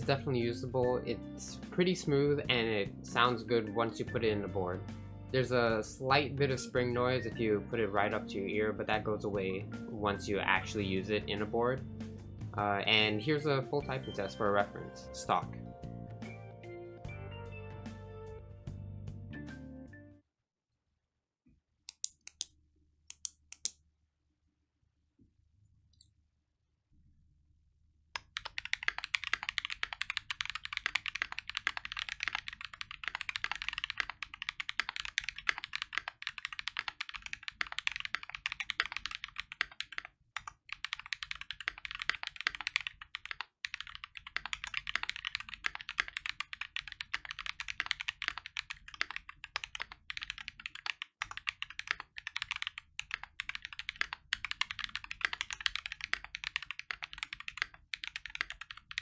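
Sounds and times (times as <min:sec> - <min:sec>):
mechanical keyboard typing: 0:21.9 - 0:22.5, 0:23.1 - 0:23.8, 0:28.2 - 0:59.0.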